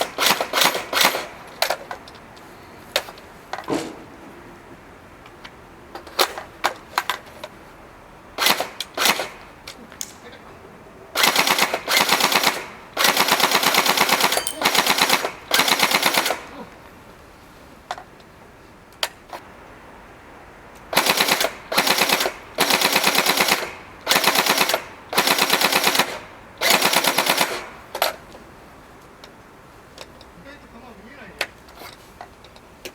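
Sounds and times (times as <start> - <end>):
airsoft gun firing bursts: 8.4 - 9.4, 11.2 - 16.4, 21.0 - 27.7.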